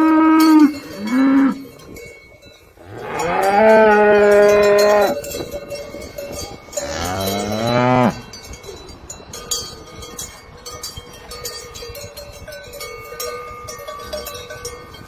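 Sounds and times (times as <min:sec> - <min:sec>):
cows mooing: 0:00.0 - 0:01.9, 0:02.8 - 0:05.3, 0:06.8 - 0:08.3.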